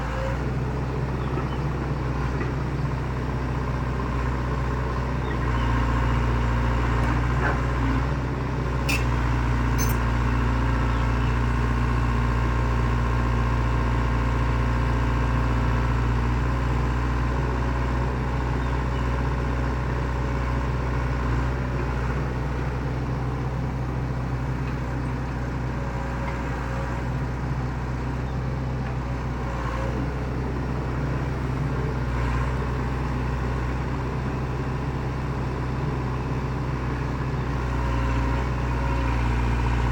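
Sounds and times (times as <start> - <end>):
diesel engine droning: 0.0 - 39.9.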